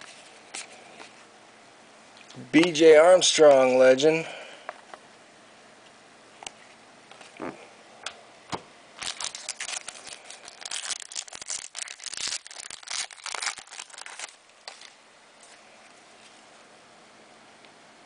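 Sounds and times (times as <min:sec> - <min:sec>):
plastic packaging crinkling and tearing: 0:09.0 - 0:15.6.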